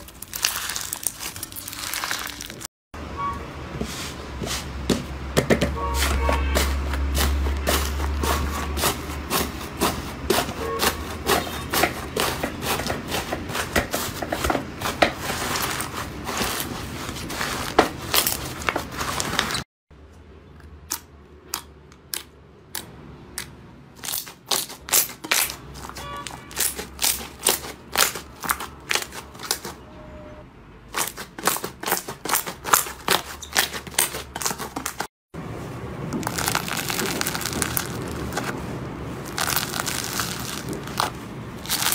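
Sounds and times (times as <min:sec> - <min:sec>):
slime crackling and popping: 0:00.0 - 0:02.7, 0:36.2 - 0:38.5, 0:39.3 - 0:41.9.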